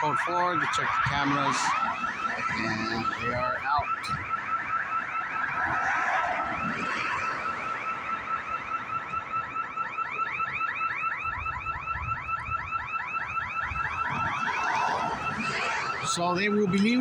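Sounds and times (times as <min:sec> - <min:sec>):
alarm siren warbling chirps: 0:00.0 - 0:17.0
steady high alarm tone: 0:00.0 - 0:17.0.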